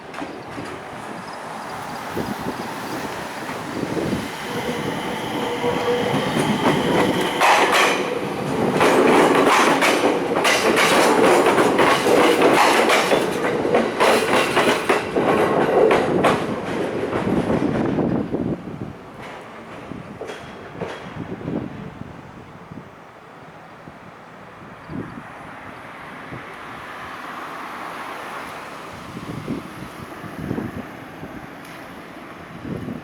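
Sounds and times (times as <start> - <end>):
freight train wheels clacking: 0.0 - 18.4, 19.1 - 21.7
train rumble: 0.0 - 23.2.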